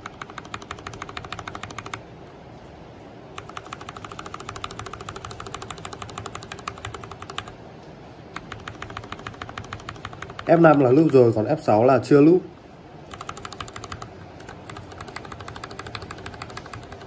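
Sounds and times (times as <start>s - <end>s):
mechanical keyboard keys clacking: 0.0s - 2.0s, 3.4s - 7.5s, 8.4s - 11.3s, 13.1s - 17.0s.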